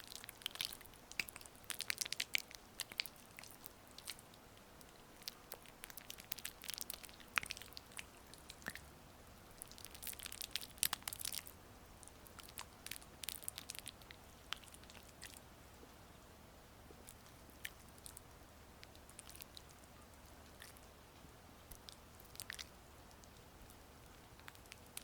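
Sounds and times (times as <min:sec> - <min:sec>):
faint rain hiss: 0:00.0 - 0:25.0
wet sticky clicks on skin: 0:00.2 - 0:04.2.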